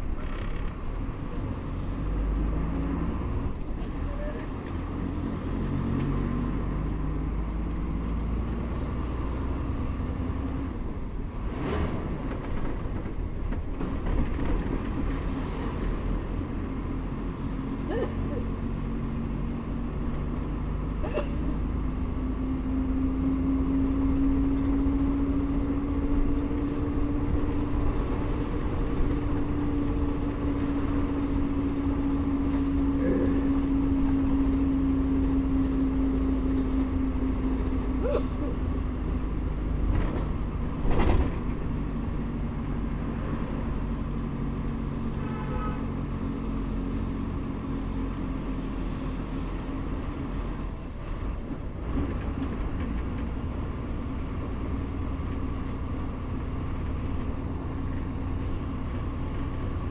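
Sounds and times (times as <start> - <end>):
bus engine humming: 0.0 - 59.9
road rumble: 0.0 - 59.9.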